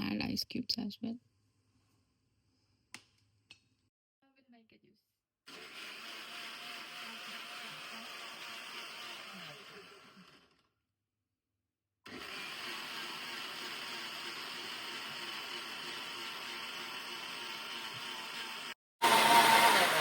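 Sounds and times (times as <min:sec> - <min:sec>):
electric blender running: 0:05.5 - 0:10.7, 0:12.1 - 0:20.0.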